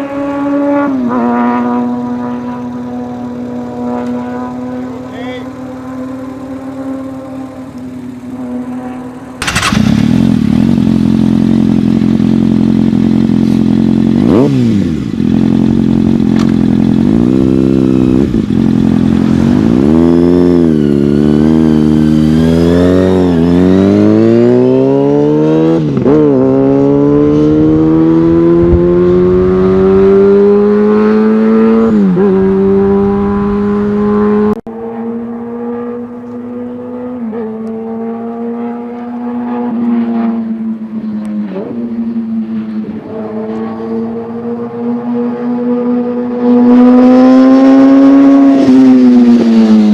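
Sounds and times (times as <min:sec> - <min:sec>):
motorcycle engine accelerating: 0:00.0 - 0:49.9
motorcycle shifting gears: 0:05.7 - 0:40.4.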